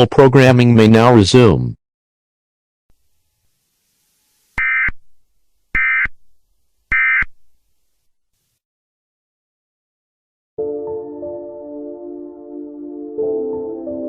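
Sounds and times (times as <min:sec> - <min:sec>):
digital data tone bursts: 0:04.6 - 0:05.0, 0:05.8 - 0:06.2, 0:06.9 - 0:07.3.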